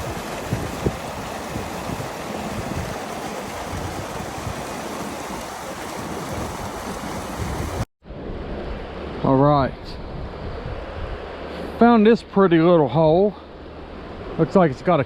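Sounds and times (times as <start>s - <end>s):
stream rushing over rocks: 0.0s - 7.9s.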